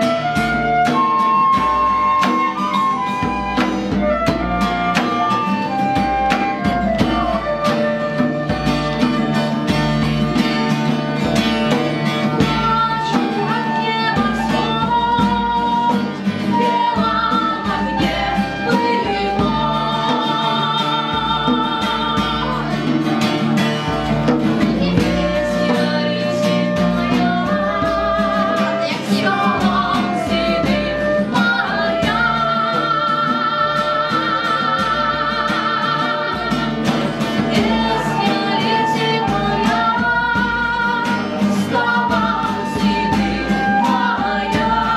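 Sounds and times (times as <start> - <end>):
guitar: 0.0 - 44.9
live band playing: 0.0 - 44.9
person singing: 11.2 - 22.8, 24.6 - 44.9.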